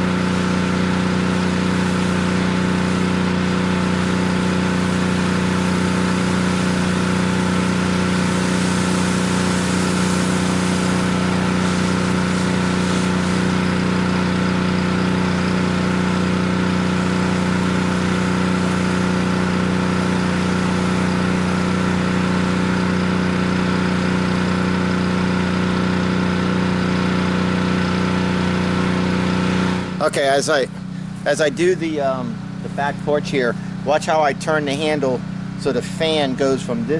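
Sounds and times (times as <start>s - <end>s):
pressure washer engine running: 0.0s - 36.9s.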